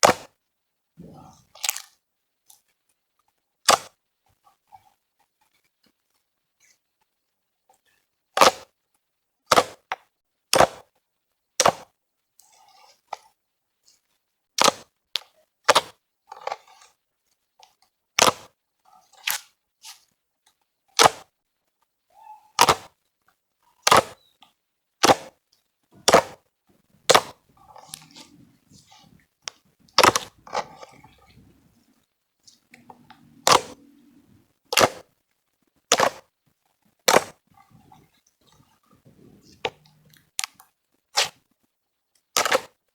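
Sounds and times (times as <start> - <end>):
slime squishing: 26.0 - 35.0.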